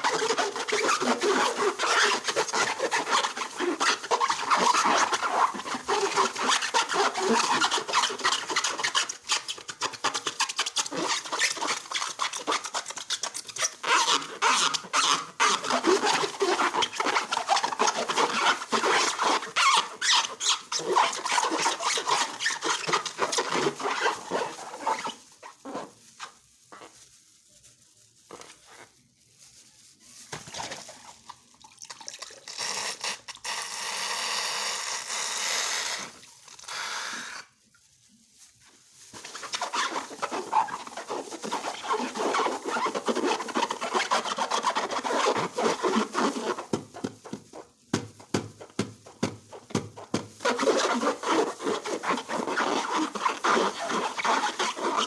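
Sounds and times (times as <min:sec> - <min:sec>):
slime squelching and crackling: 0:37.5 - 0:55.0.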